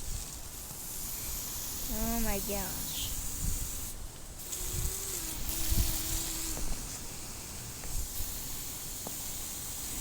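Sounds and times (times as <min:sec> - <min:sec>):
garden hose spraying water: 0:00.0 - 0:10.0
wind buffeting microphone: 0:02.3 - 0:06.8.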